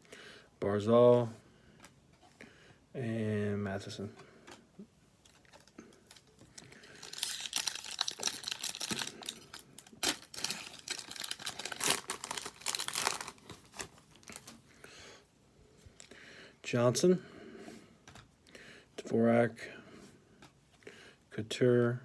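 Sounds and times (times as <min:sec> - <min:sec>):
plastic foil wrapper crinkling: 0:05.2 - 0:14.7.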